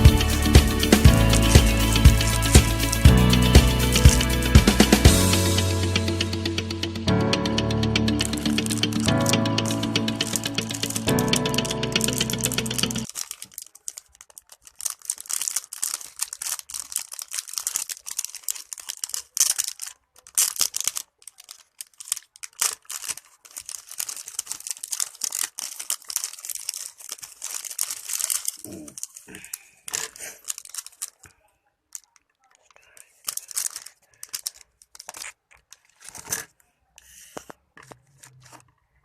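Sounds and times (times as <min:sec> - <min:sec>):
packaging crinkling and tearing: 0:13.0 - 0:38.8.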